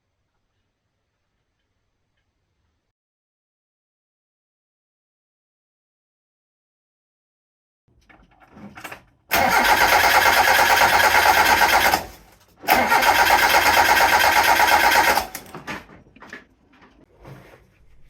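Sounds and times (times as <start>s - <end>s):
starter motor cranking engine: 9.3s - 15.7s.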